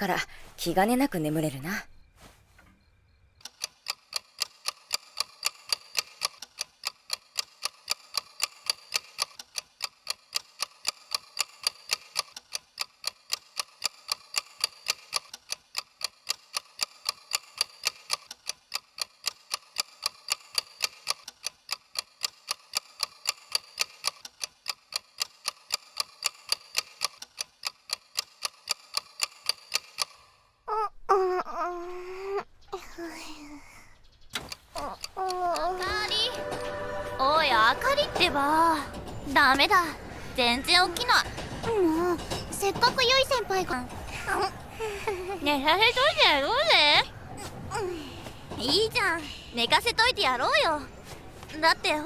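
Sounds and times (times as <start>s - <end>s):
alarm clock ticking fast: 3.1s - 30.3s, 34.8s - 41.4s.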